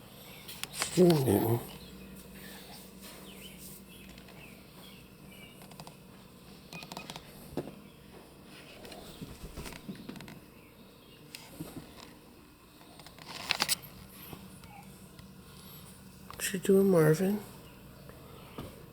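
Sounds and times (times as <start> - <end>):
faint bird chirps: 1.7 - 5.7.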